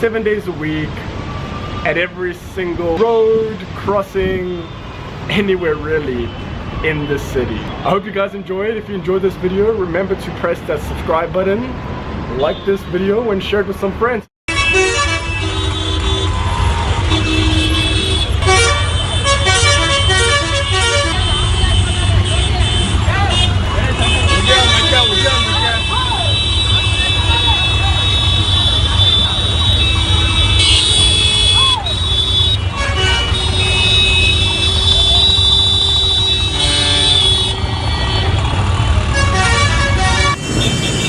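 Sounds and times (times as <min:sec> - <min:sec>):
rumble of engines: 0:00.0 - 0:41.0
vehicle horns honking: 0:14.5 - 0:16.4, 0:17.0 - 0:41.0.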